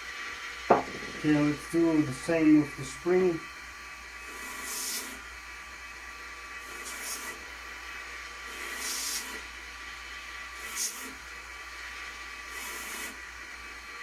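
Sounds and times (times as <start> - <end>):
faint steady hum: 0.7 - 3.7
short hissing strokes: 6.7 - 7.4, 8.5 - 9.4.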